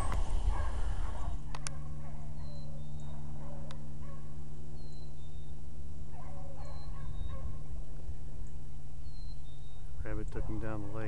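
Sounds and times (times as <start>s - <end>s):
hounds baying in the distance: 0.0s - 5.1s, 6.1s - 8.0s, 10.0s - 11.0s
steady low hum: 0.0s - 11.0s
high bird chirps: 9.0s - 9.9s.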